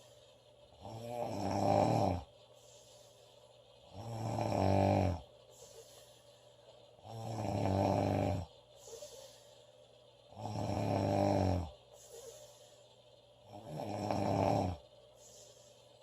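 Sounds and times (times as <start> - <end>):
girl snoring: 0.8 - 2.3, 3.9 - 5.9, 7.0 - 9.3, 10.3 - 12.5, 13.5 - 14.8.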